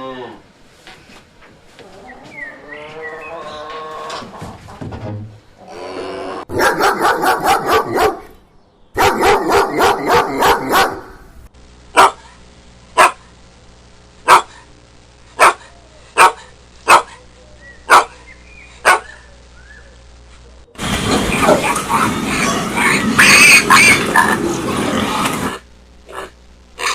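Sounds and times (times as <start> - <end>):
dog barking: 6.5 - 8.3, 9.0 - 11.2, 12.0 - 12.4, 13.0 - 13.3, 14.2 - 14.7, 15.4 - 17.3, 17.9 - 18.2, 18.8 - 19.3.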